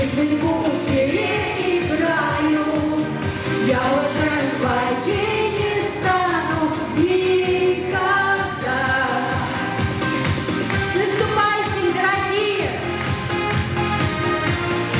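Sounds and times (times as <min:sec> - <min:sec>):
steady beat: 0:12.1 - 0:14.9.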